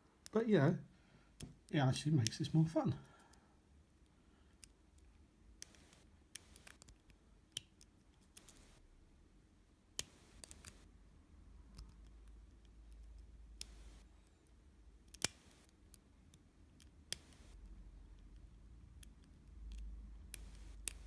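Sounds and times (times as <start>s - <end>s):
lock pick metallic clicks: 15.1s - 15.4s.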